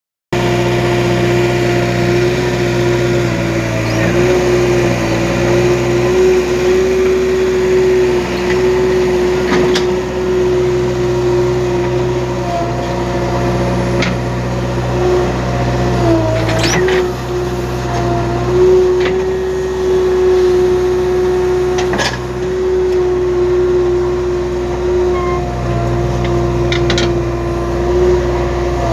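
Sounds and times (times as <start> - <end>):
diesel engines droning: 0.4 - 28.9.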